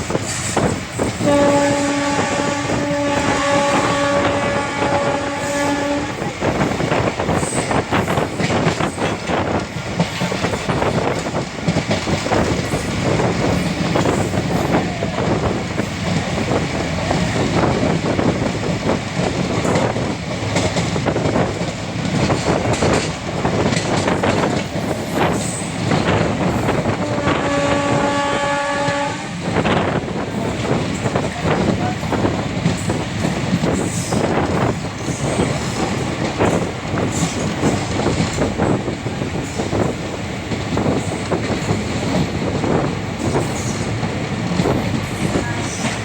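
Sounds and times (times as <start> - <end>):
train wheels clickety-clack: 0.0 - 46.0
locomotive horn: 1.2 - 6.7, 26.8 - 29.5.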